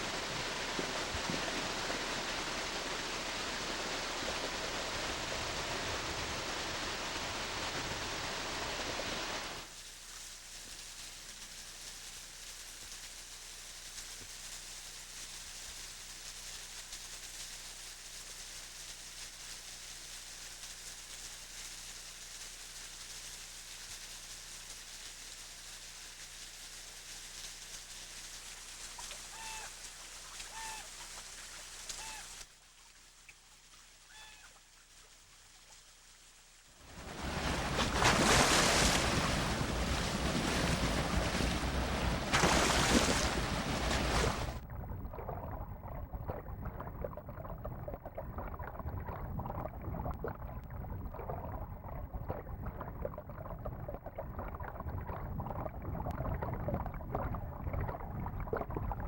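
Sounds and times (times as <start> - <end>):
steady hiss: 0.0 - 44.6
rushing water: 0.0 - 59.0
bird calls: 29.3 - 29.8, 30.4 - 31.1, 31.9 - 32.4.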